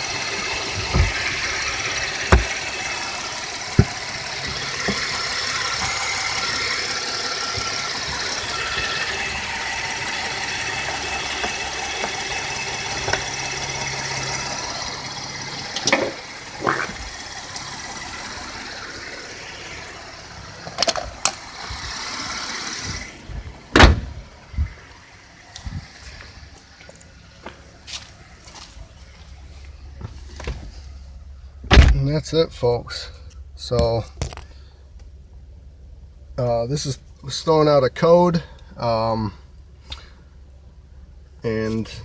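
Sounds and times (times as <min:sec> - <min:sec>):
car engine idling: 0:00.0 - 0:42.0
sharp engine knocks: 0:00.3 - 0:14.6, 0:23.7 - 0:24.2.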